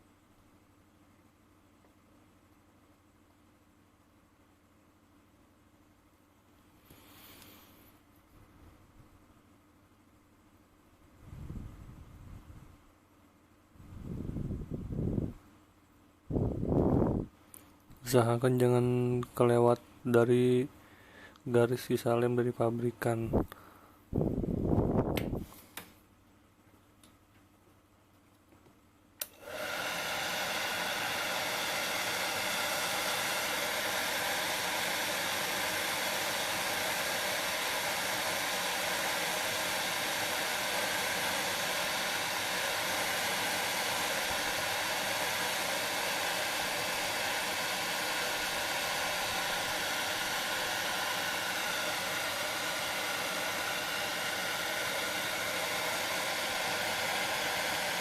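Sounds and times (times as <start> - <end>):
hot-air blower running: 16.3 - 17.3, 23.3 - 25.9, 29.2 - 58.0
hot-air blower switch click: 29.2 - 29.9.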